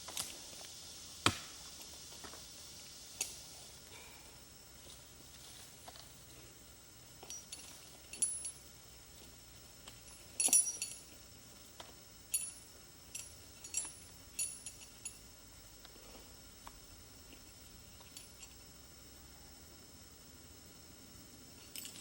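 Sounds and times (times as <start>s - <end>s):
light ringing clinks: 7.1s - 8.8s, 9.9s - 11.2s, 12.2s - 15.4s, 17.9s - 18.7s, 21.6s - 22.0s.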